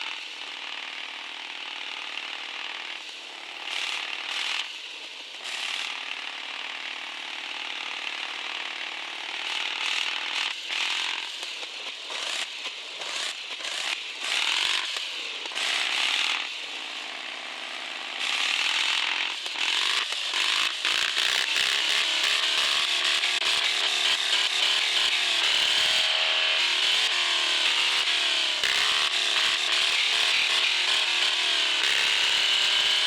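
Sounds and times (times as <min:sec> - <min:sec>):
electric motor and gears whining: 0:18.2 - 0:33.0.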